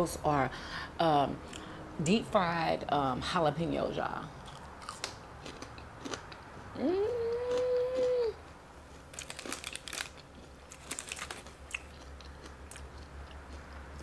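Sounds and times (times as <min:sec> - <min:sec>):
crunchy bites and chewing: 0:04.4 - 0:06.5, 0:09.0 - 0:14.0
person humming: 0:06.7 - 0:08.4.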